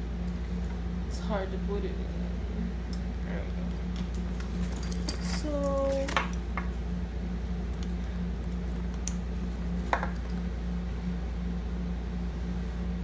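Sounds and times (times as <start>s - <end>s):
steady low hum: 0.0s - 13.0s
light clicks from bag handling: 4.2s - 6.5s.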